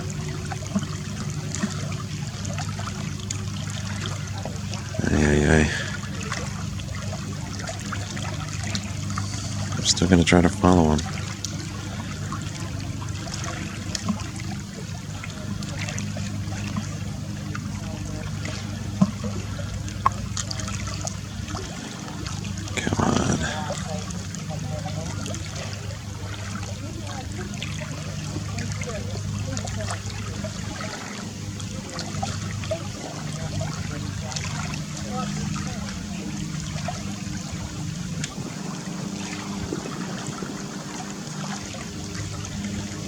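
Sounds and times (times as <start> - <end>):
small waves lapping: 0.0 - 43.0
steady low hum: 0.0 - 43.0.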